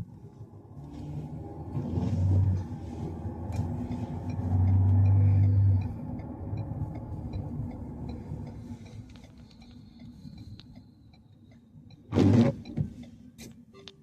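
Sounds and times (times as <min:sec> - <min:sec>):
engine and road rumble: 0:00.0 - 0:14.0
car turn signal clicking: 0:03.4 - 0:14.0.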